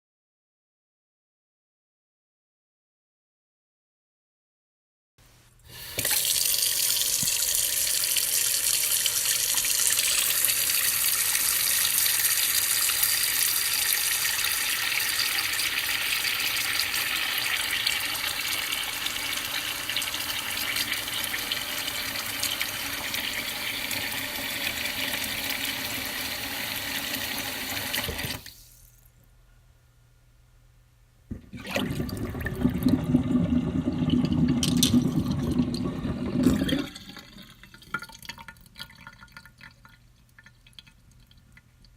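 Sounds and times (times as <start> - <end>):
sink draining with gurgling: 5.7 - 28.6, 31.4 - 41.6
tap running into sink: 7.0 - 7.5, 27.8 - 28.5.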